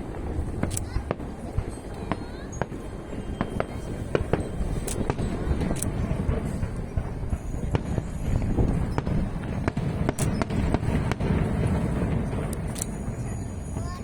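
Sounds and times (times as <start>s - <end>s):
fireworks bangs and cracks: 0.0s - 14.0s
low rumble of fireworks bursts: 0.0s - 14.0s.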